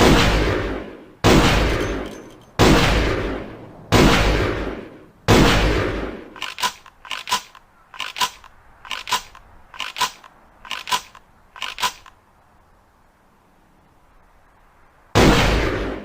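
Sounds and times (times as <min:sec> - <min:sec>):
shotgun pump action clacks: 0:06.4 - 0:12.2.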